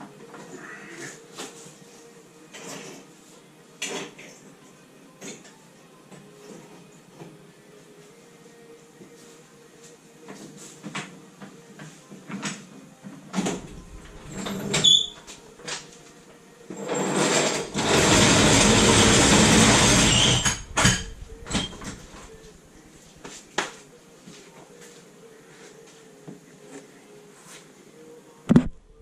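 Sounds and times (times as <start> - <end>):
short squeak: 13.6 - 15.4, 19.8 - 22.3
metal clanks and knocks: 16.9 - 22.3.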